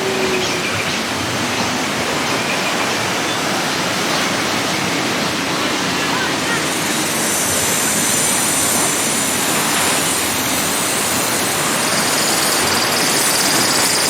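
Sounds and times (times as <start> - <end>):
churning river rapids: 0.0 - 14.0.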